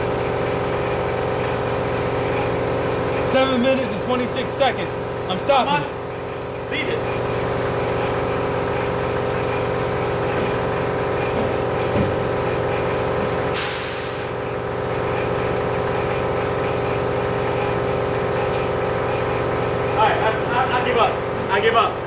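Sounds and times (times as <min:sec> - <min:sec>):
machine motor humming: 0:00.0 - 0:13.6
compressed air hiss: 0:13.5 - 0:14.4.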